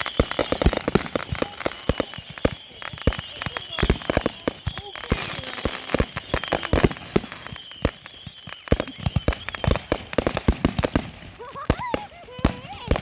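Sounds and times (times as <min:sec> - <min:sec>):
fireworks and firecrackers banging: 0:00.0 - 0:13.0
thin high whistle: 0:01.4 - 0:09.9.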